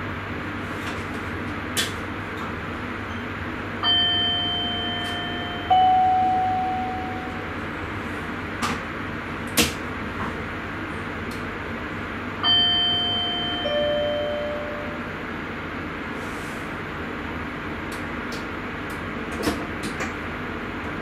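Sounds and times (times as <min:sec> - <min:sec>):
train cab running noise: 0:00.0 - 0:21.0
two-note electronic chime: 0:03.1 - 0:07.5, 0:12.4 - 0:15.1.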